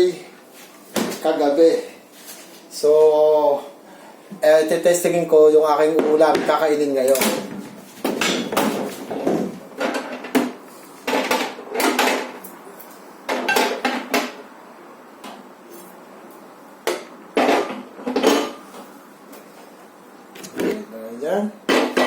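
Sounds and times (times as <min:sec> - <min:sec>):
dishes and utensils clattering: 0:08.1 - 0:12.4, 0:13.3 - 0:14.4, 0:17.4 - 0:18.6.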